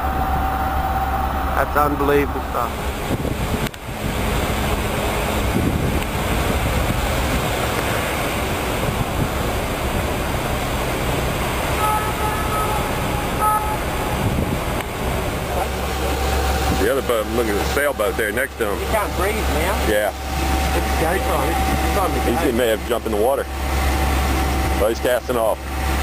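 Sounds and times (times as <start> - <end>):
wind buffeting microphone: 0.0 - 11.8, 12.9 - 24.8
low engine rumble: 0.0 - 26.0
brief high tones: 11.8 - 14.2.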